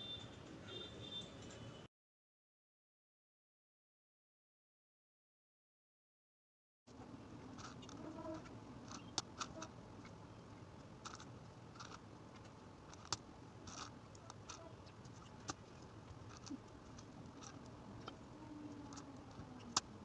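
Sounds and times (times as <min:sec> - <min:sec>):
hands working with craft materials: 0:07.0 - 0:20.0.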